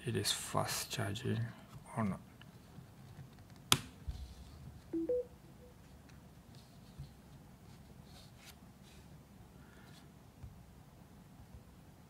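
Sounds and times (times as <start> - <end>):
two-note electronic beep: 5.0 - 5.3.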